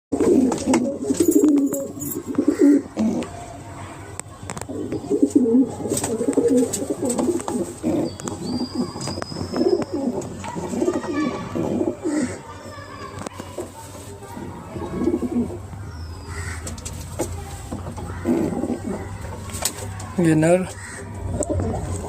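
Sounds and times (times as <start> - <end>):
pigeons cooing: 0.1 - 3.5, 4.7 - 12.6, 14.7 - 17.1, 17.9 - 19.8, 20.7 - 22.0.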